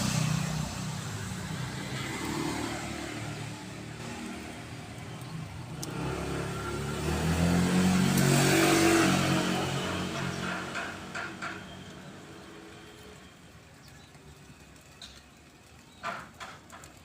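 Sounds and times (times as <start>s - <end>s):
vehicle engine passing by: 0.0s - 13.0s.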